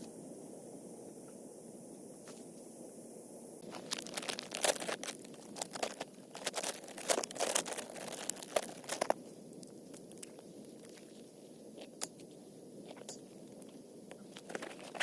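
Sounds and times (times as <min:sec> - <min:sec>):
crinkling and crunching: 0:03.6 - 0:15.0.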